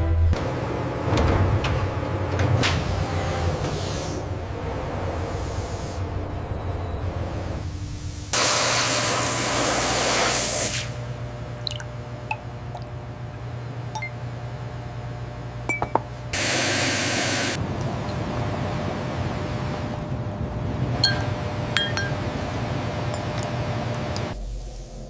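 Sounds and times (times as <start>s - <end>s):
hissing spray bursts: 8.3s - 11.0s, 16.4s - 17.6s.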